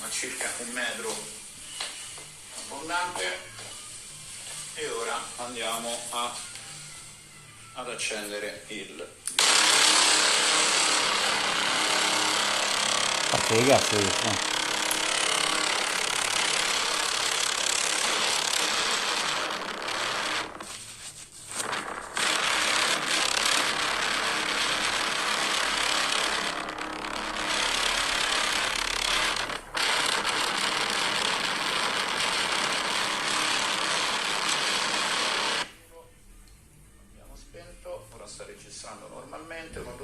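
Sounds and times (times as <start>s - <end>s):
harsh jamming hiss and crackle: 0.0s - 1.8s, 9.2s - 35.7s.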